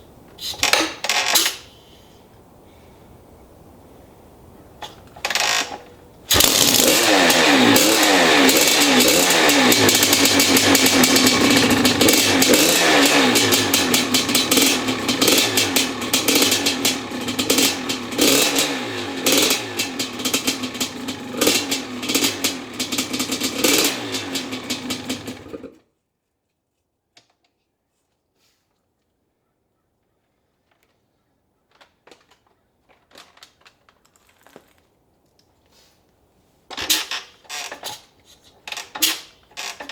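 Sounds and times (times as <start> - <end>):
dirt bike engine revving: 5.2 - 25.8.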